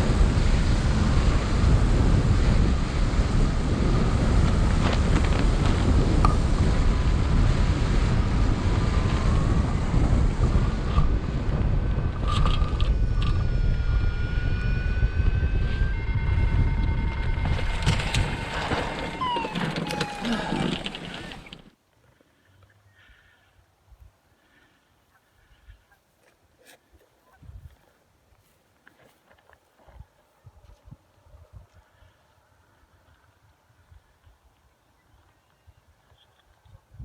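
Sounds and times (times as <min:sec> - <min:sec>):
wind buffeting microphone: 0:00.0 - 0:21.7, 0:27.2 - 0:27.9.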